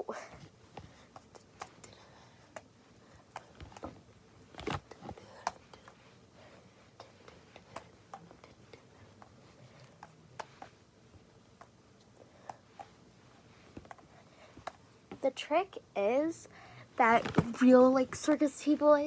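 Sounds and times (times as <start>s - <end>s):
balls landing in palms: 17.2s - 17.7s.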